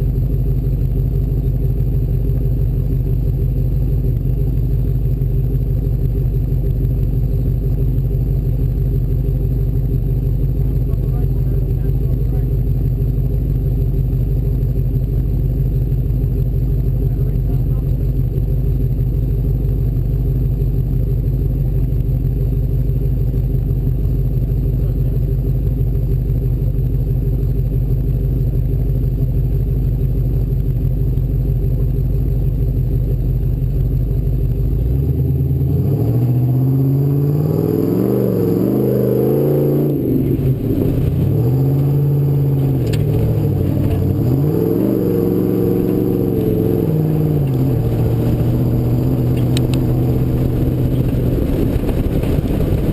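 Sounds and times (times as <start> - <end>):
off-road truck engine revving: 0.0 - 22.2, 34.6 - 52.9.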